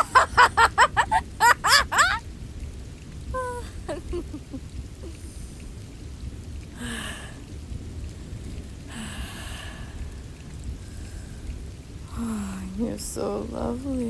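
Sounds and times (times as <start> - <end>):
low rumble: 0.0 - 14.0
steady rain: 0.0 - 14.0
breathy exhalations: 6.8 - 7.6.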